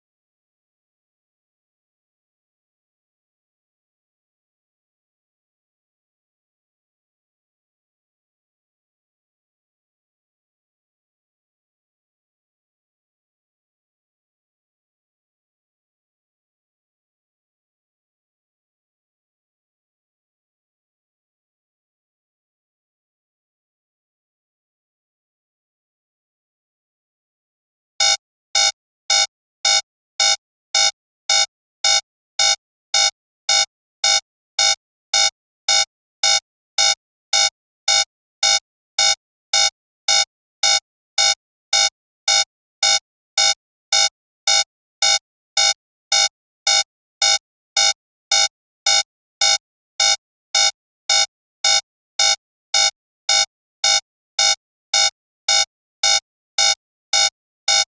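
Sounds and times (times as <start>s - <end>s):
alarm clock beeping: 28.0s - 57.9s.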